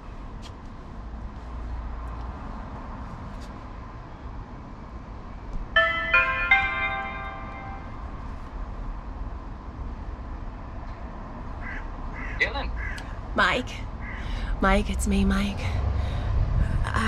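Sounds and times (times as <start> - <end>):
doorbell chime: 5.8 - 8.1.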